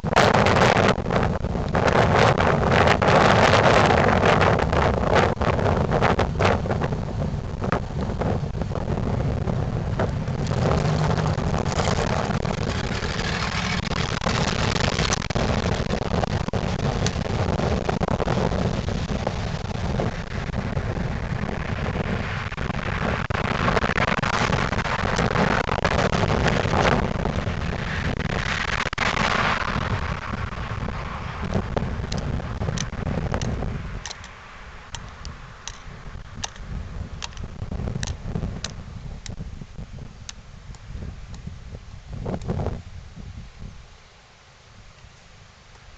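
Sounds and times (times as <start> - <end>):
car engine rumbling driving by: 7.4 - 23.4
sharp clicks: 32.1 - 39.4.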